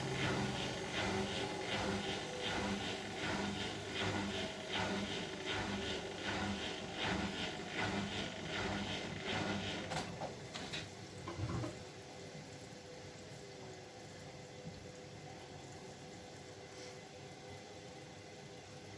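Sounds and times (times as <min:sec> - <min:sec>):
water and laundry sloshing: 0:00.0 - 0:11.8
steady water sound: 0:00.0 - 0:18.9
washing machine motor hum: 0:00.0 - 0:18.9.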